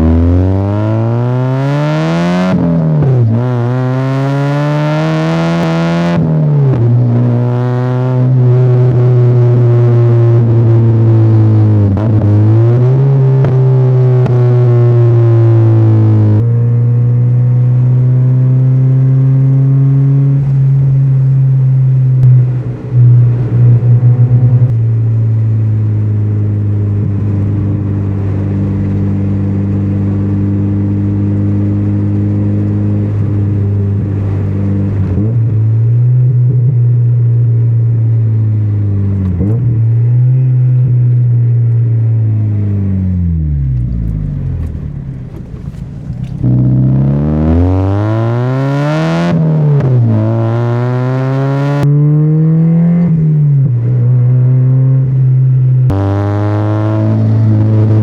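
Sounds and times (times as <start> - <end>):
car engine cruising: 0.0 - 58.0
loud thuds: 43.8 - 46.6.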